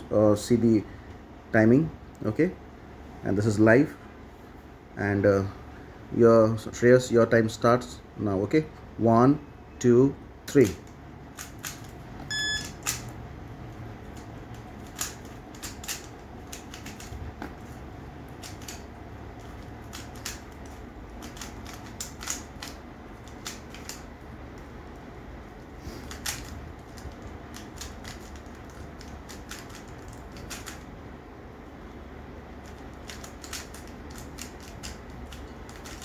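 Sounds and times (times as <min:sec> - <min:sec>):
puzzle cube plastic clicks: 0:14.1 - 0:17.2, 0:18.4 - 0:18.8, 0:19.4 - 0:24.1, 0:26.0 - 0:30.9, 0:32.6 - 0:36.0.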